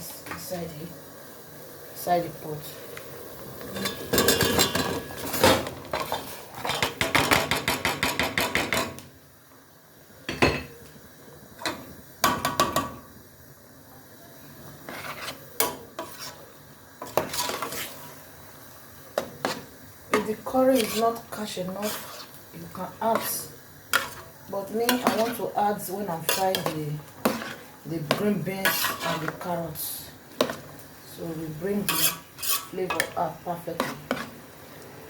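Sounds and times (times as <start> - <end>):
utensils clinking against pot: 3.7 - 9.0, 31.9 - 33.2.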